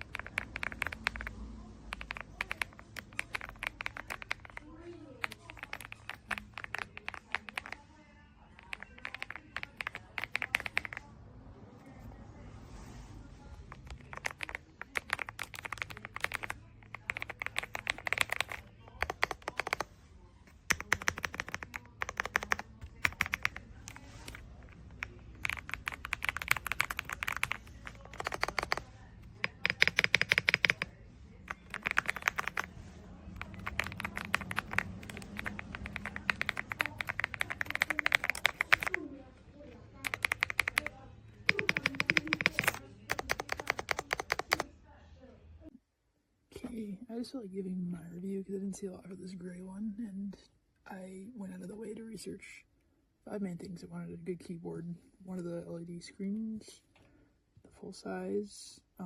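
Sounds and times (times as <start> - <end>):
mechanical keyboard typing: 0.0 - 7.9, 8.5 - 11.1, 13.6 - 19.9, 20.5 - 39.0, 40.0 - 44.7.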